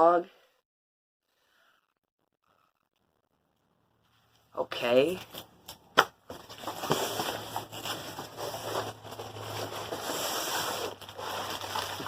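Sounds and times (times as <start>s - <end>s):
paper and packaging rustling: 6.3s - 12.0s.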